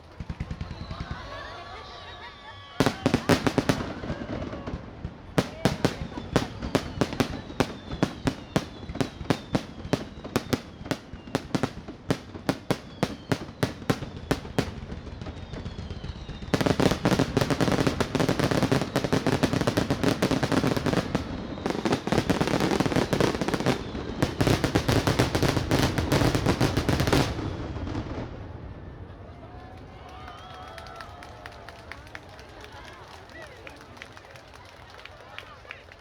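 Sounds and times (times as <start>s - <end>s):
crackle of firework bursts: 0.0s - 29.4s
firework bangs: 0.1s - 29.2s
falling firework whistles: 0.4s - 28.2s.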